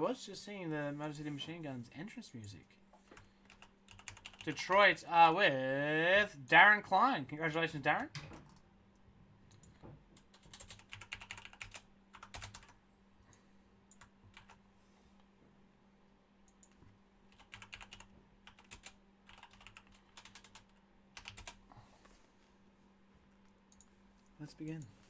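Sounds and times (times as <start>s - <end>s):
faint keyboard typing: 2.4s - 4.9s, 8.0s - 14.6s, 16.4s - 21.7s, 23.3s - 25.0s.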